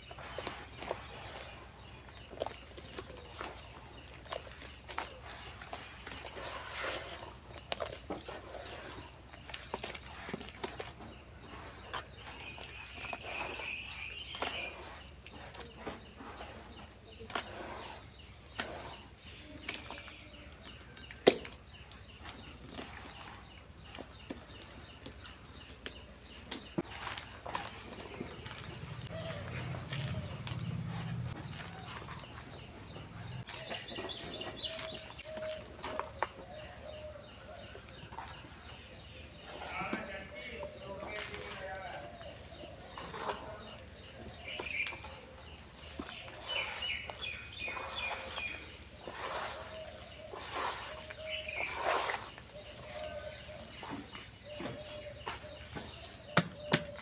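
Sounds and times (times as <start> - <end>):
birds calling: 0.0 - 57.0
dry cement lumps crumbling by hand: 19.6 - 57.0.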